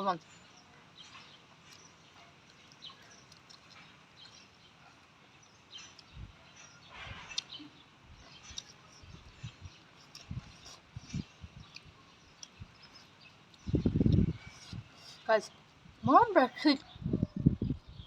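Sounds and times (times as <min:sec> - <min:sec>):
chewing and mouth smacks: 0:01.2 - 0:05.1, 0:05.7 - 0:15.2.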